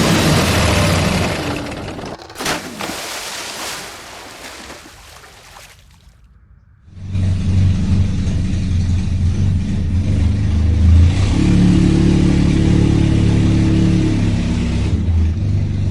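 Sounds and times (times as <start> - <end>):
vehicle engine revving: 7.0 - 15.9.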